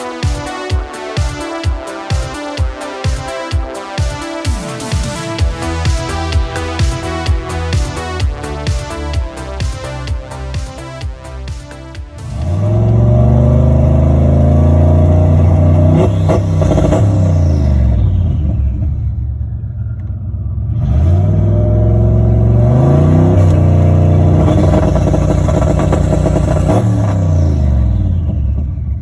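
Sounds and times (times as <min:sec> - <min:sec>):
engine revving on rev limiter: 0:12.2 - 0:19.0, 0:20.7 - 0:29.0.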